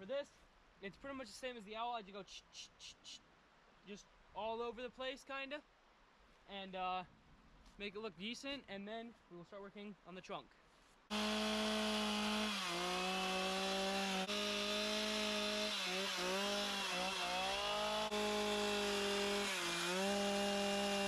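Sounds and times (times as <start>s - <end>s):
chainsaw cutting wood: 11.1s - 21.0s.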